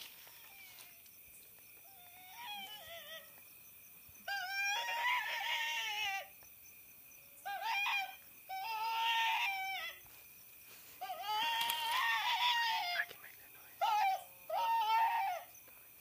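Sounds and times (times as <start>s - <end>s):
high wavering rabbit squeal: 4.3s - 6.3s, 11.0s - 13.1s.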